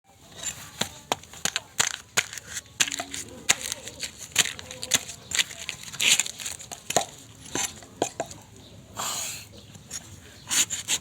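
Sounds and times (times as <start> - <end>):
dry brittle material cracking: 0.4 - 7.9.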